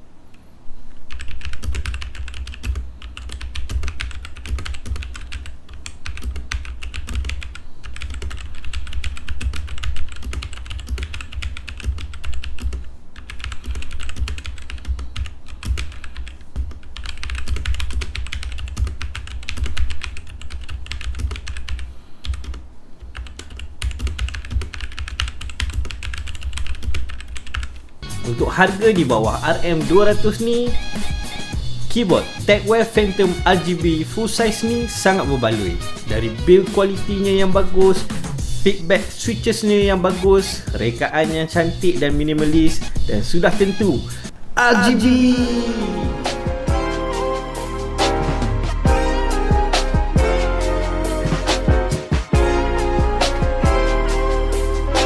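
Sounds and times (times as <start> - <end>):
mechanical keyboard typing: 1.1 - 27.8.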